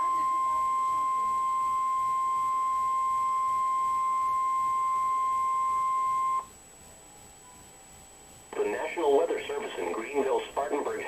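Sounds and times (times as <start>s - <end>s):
steady warning alarm tone: 0.0s - 6.5s
faint hiss: 0.0s - 11.0s.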